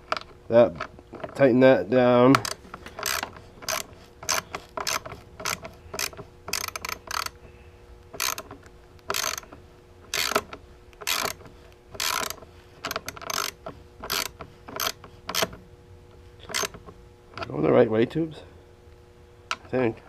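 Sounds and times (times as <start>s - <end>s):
ratchet wrench clicking: 2.3s - 7.4s, 8.2s - 9.5s, 10.1s - 11.4s, 12.0s - 15.6s, 16.4s - 16.8s.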